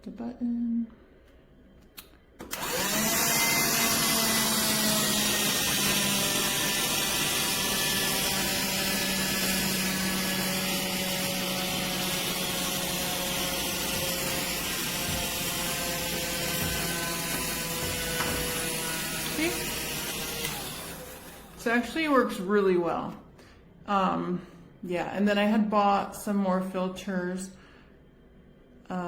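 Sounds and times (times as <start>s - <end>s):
handheld vacuum motor whining: 2.4s - 22.4s.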